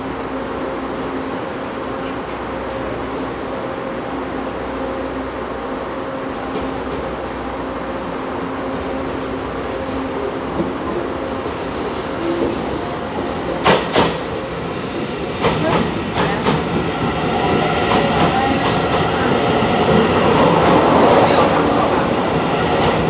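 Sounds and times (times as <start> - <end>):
train rolling rumble: 0.2 - 23.0
train wheels clacking: 11.0 - 20.9.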